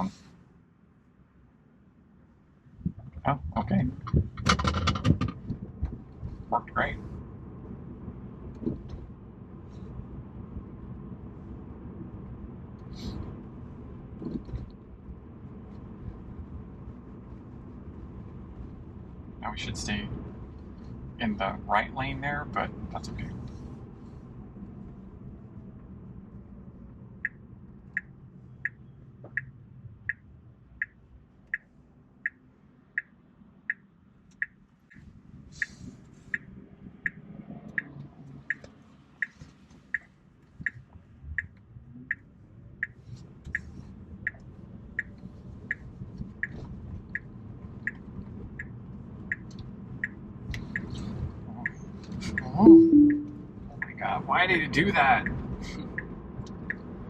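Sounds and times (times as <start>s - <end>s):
low road noise: 0.0s - 57.0s
turn signal ticking: 27.1s - 54.1s, 55.0s - 57.0s.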